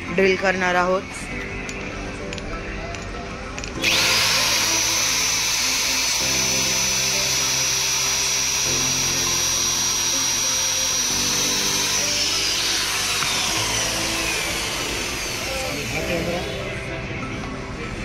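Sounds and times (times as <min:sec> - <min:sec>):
background music: 0:00.0 - 0:18.0
electric drill whining: 0:03.8 - 0:17.1.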